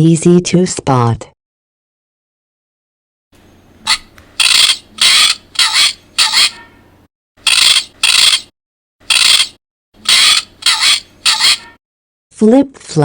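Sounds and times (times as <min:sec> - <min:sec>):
recorded parrot squawks from speaker: 0:03.8 - 0:06.8, 0:07.5 - 0:08.5, 0:09.1 - 0:11.8.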